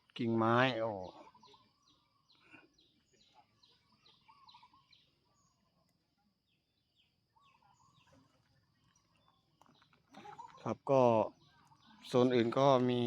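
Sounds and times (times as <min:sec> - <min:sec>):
high falling bird chirps: 0:00.4 - 0:05.8
bird warbling call: 0:03.6 - 0:05.6.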